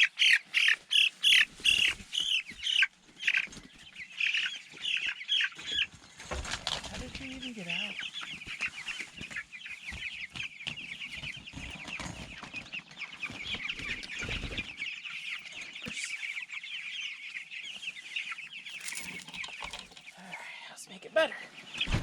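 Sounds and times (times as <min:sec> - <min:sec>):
chicks peeping: 0:00.0 - 0:20.7, 0:21.4 - 0:22.0
knocks and rustling: 0:18.7 - 0:20.1.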